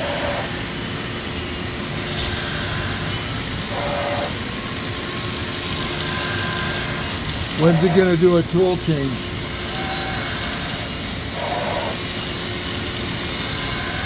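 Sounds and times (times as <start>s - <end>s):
machine hum and hiss: 0.0s - 14.0s.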